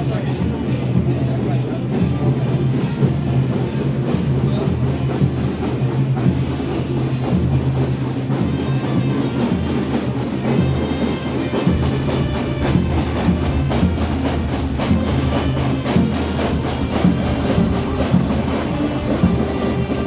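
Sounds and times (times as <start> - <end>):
percussion strikes: 0.0 - 20.0
steady drumming: 0.0 - 20.0
low sustained drone: 11.8 - 20.0.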